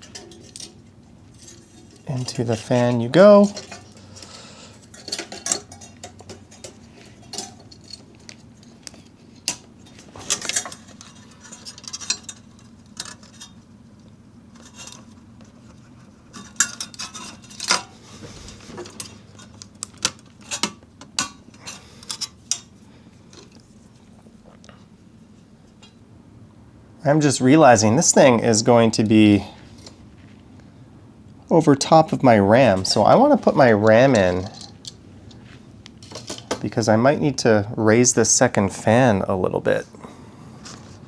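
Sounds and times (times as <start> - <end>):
fan clips clicking on heatsink: 0.0 - 23.7, 31.8 - 37.5.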